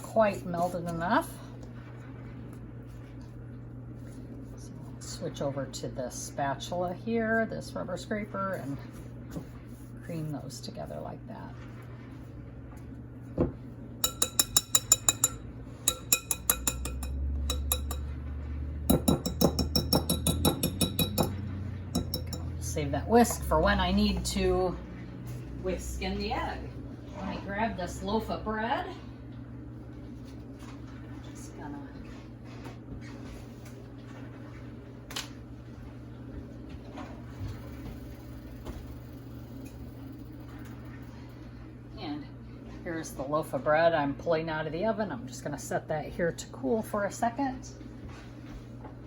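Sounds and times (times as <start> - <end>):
steady low hum: 0.0 - 49.0
whisk clinking against mixing bowl: 14.0 - 22.6.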